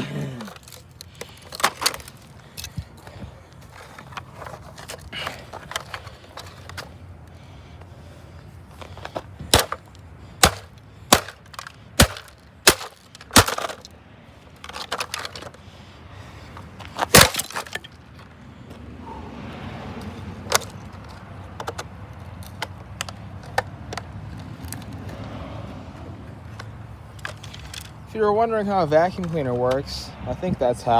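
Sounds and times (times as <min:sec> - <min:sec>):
sledgehammer smashing plastic: 0:09.1 - 0:13.9, 0:14.7 - 0:15.4, 0:17.0 - 0:17.8.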